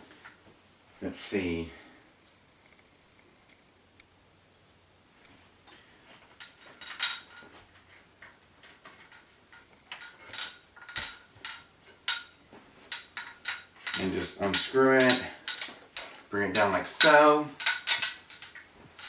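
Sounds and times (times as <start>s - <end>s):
metallic clicks and clinks: 5.7s - 19.0s.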